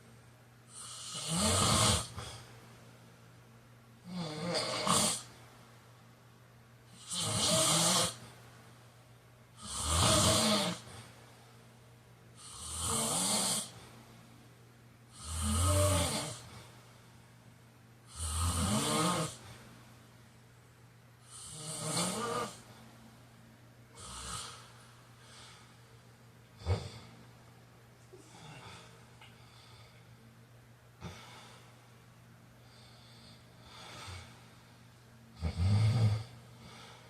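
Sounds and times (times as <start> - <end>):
man snoring: 0.7 - 2.3, 4.0 - 5.3, 6.9 - 8.2, 9.6 - 10.9, 12.4 - 13.8, 15.1 - 16.5, 18.1 - 19.4, 21.2 - 22.7, 24.0 - 24.7, 26.6 - 27.1, 35.4 - 36.8.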